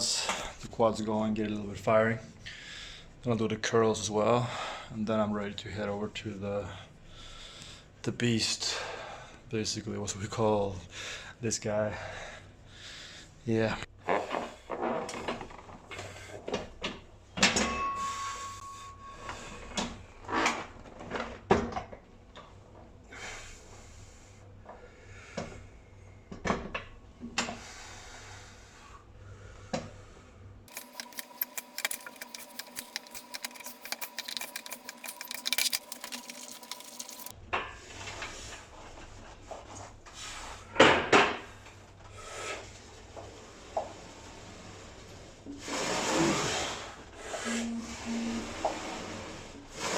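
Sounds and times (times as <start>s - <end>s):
rubbing and scraping: 30.7s - 37.3s.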